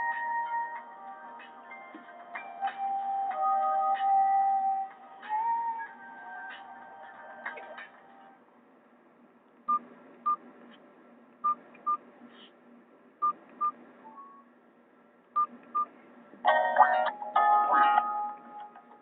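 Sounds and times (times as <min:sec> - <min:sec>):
ringtone tune: 0:16.5 - 0:18.4.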